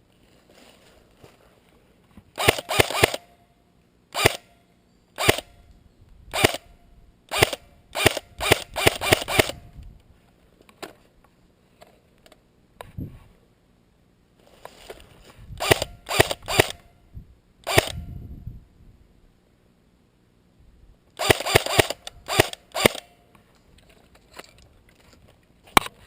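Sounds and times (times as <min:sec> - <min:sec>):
airsoft rifle shots: 0:02.4 - 0:03.3, 0:04.1 - 0:04.5, 0:05.2 - 0:05.6, 0:06.3 - 0:06.7, 0:07.3 - 0:09.6, 0:15.6 - 0:16.9, 0:17.6 - 0:18.1, 0:21.2 - 0:23.2.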